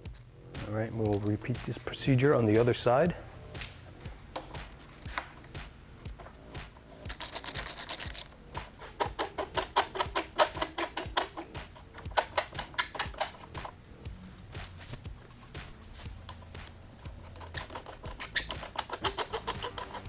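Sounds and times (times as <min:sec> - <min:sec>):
background music: 0:00.0 - 0:20.0
socket wrench ratchet clicks: 0:07.1 - 0:13.8, 0:16.2 - 0:20.0.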